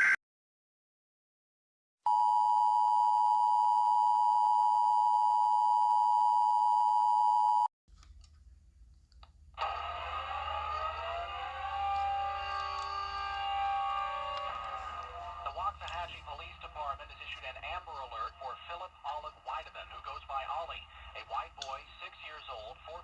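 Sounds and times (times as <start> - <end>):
low hum: 8.0 - 22.0
broadcast audio: 9.5 - 23.0.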